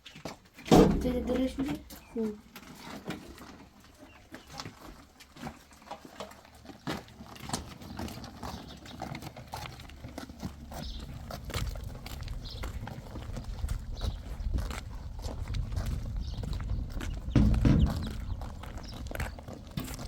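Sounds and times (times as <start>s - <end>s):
irregular knocks and clicks: 17.0s - 19.3s.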